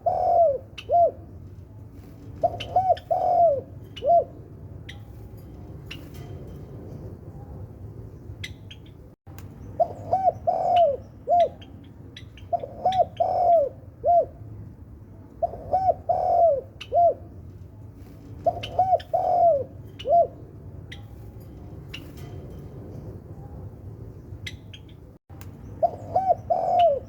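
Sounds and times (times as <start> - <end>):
dove cooing: 0.0 - 1.4, 2.3 - 4.5, 9.8 - 14.4, 15.4 - 17.4, 18.3 - 20.5, 25.8 - 27.0.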